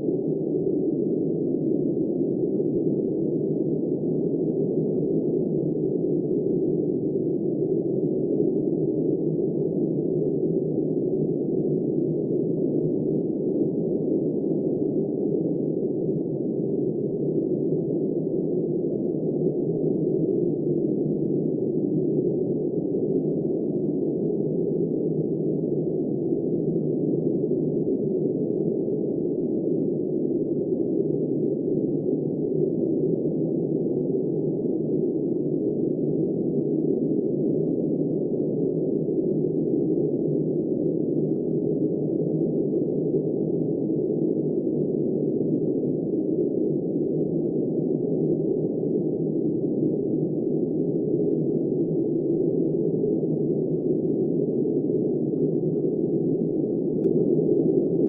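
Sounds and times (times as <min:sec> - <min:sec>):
muffled wind noise: 0:00.0 - 0:58.0.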